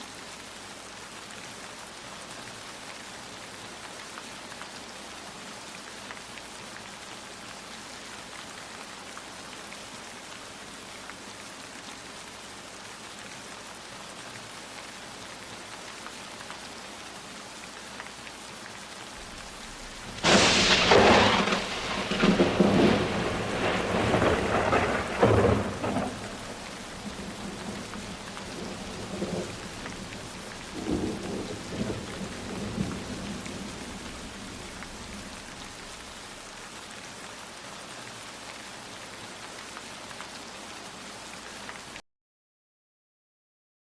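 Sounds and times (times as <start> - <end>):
rain hissing: 0.0 - 42.0
thunder rumbling: 19.2 - 36.2.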